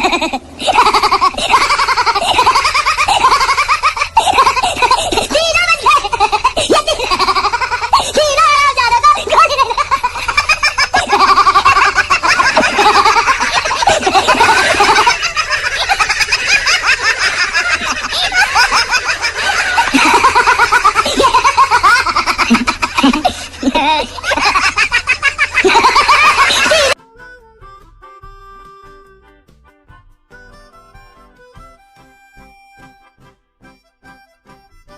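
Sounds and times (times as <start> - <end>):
person laughing heartily: 0.0 - 27.0.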